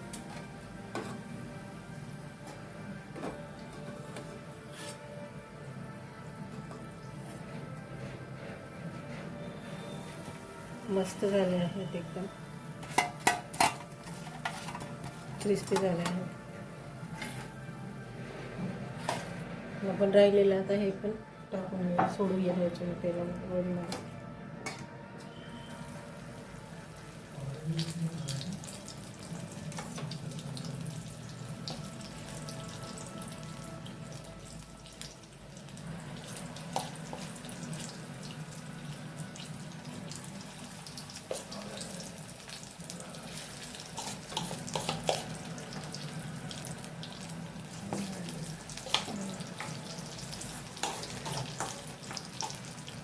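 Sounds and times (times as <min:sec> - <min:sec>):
food deep-frying in oil: 0:27.0 - 0:53.0.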